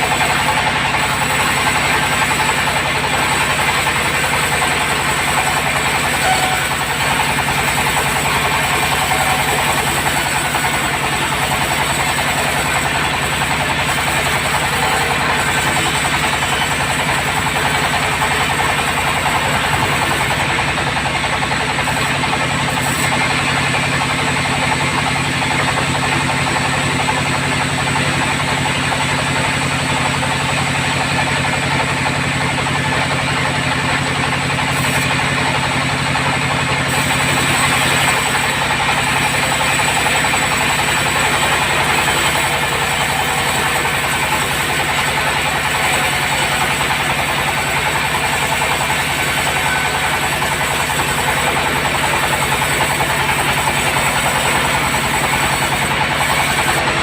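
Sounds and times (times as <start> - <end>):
bandsaw running: 0.0 - 57.0
low motor hum: 33.8 - 57.0.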